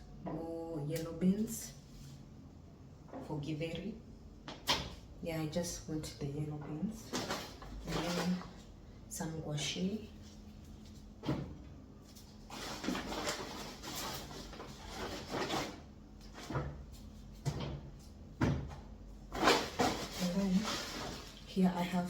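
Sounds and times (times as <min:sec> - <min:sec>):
plastic bags rustling: 0:07.0 - 0:08.7, 0:11.8 - 0:17.4, 0:19.2 - 0:22.0
items knocking on a surface: 0:17.4 - 0:21.2.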